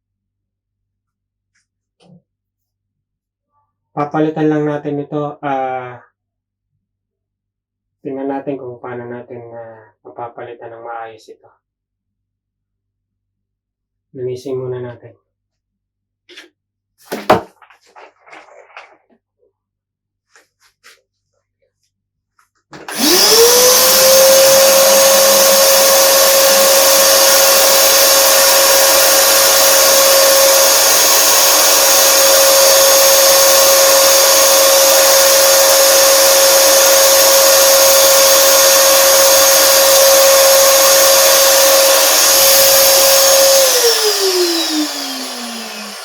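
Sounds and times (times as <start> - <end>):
electric blower motor whine: 22.8 - 46.0.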